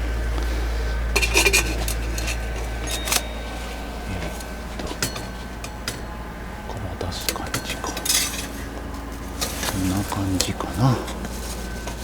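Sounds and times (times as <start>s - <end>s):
metal pipe clinks and scrapes: 1.0s - 6.2s, 7.2s - 12.0s
ringing metallic clink: 1.1s - 6.6s, 7.2s - 8.8s.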